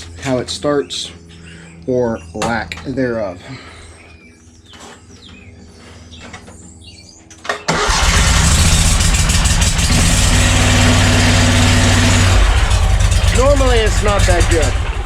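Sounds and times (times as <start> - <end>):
electric starter cranking: 7.5 - 15.0
mower engine running: 7.7 - 15.0.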